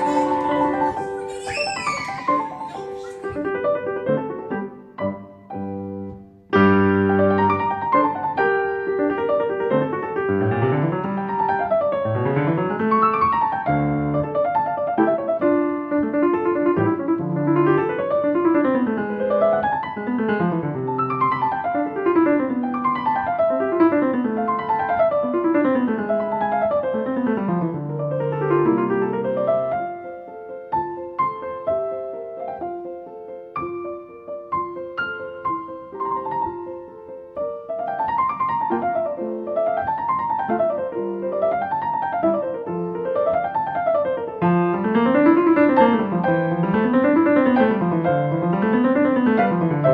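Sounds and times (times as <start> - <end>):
piano arpeggios: 0.0 - 49.9.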